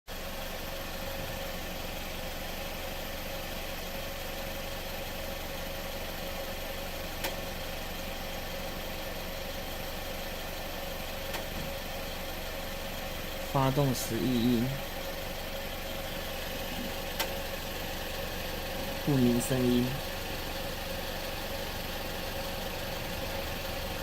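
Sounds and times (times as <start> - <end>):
car engine idling: 0.1 - 24.0
mid-pitched hum: 13.2 - 24.0.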